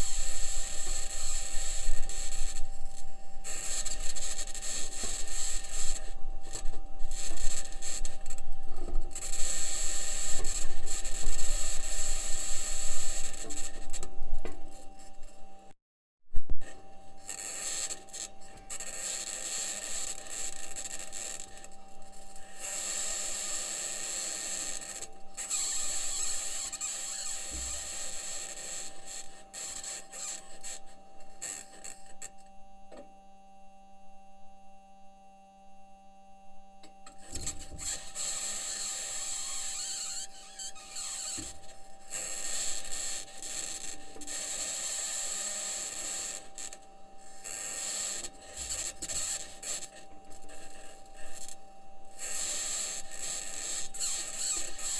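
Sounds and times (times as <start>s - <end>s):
steady low hum: 0.0s - 15.8s.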